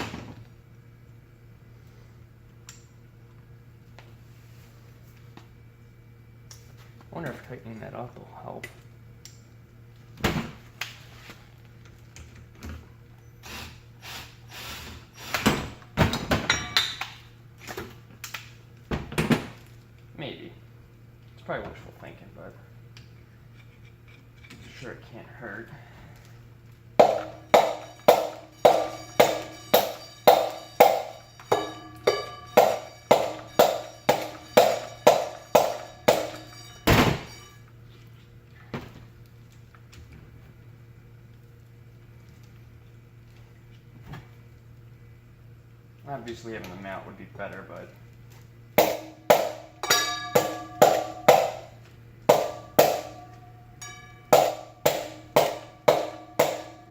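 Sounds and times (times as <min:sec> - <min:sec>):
hammer blows on metal: 0:27.0 - 0:37.5, 0:48.8 - 0:56.9
metal tools scraping and knocking: 0:27.0 - 0:37.6, 0:49.8 - 0:56.9
sharp metal clanks: 0:27.0 - 0:37.6, 0:48.8 - 0:56.9
metallic ring: 0:27.0 - 0:37.7, 0:48.8 - 0:56.9.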